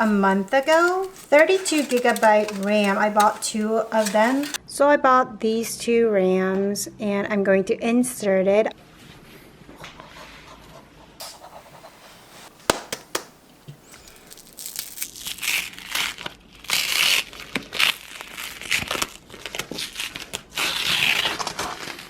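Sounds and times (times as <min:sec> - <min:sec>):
plastic packaging crinkling: 0:00.0 - 0:04.6, 0:11.5 - 0:15.0.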